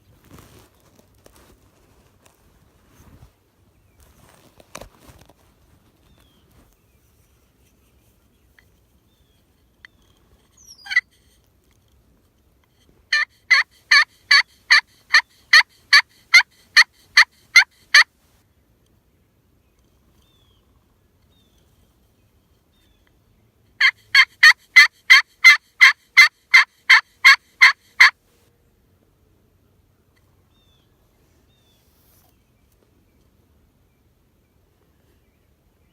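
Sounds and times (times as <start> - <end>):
brief rustle: 0.0 - 12.9
faint songbird chirps: 6.0 - 11.4, 18.5 - 23.7, 30.1 - 35.9
wild turkey gobble: 10.6 - 11.4, 13.1 - 18.1, 23.8 - 28.2.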